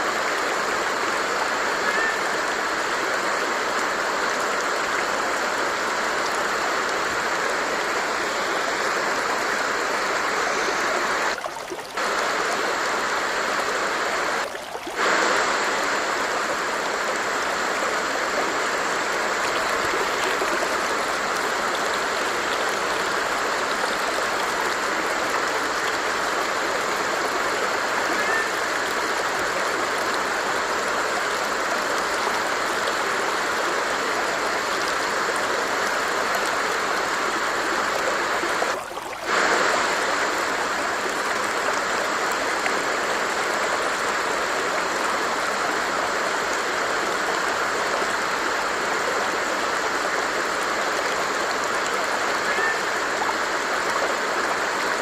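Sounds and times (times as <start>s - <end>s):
stream water rushing: 0.0s - 55.0s.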